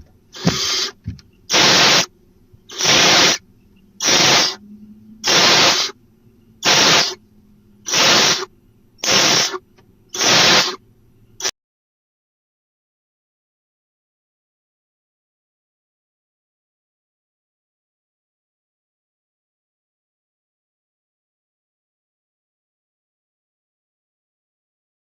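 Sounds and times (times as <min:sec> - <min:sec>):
owl hissing calls: 0:00.3 - 0:02.1, 0:02.7 - 0:03.4, 0:04.0 - 0:06.0, 0:06.6 - 0:07.2, 0:07.8 - 0:10.8.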